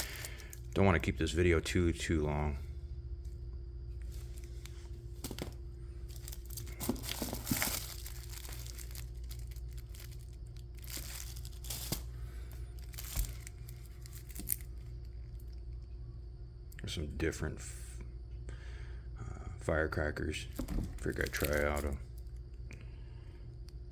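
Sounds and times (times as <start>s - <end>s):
packaging crinkling and rustling: 0.0s - 0.8s, 4.1s - 14.9s, 20.5s - 22.4s
steady low hum: 0.0s - 23.9s.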